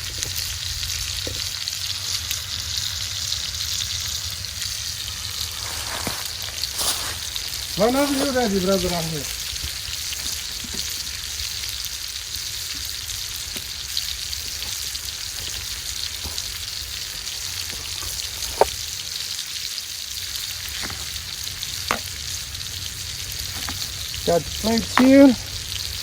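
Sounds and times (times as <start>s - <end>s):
burger patties sizzling: 0.0s - 26.0s
fat popping: 5.1s - 19.3s, 20.2s - 26.0s.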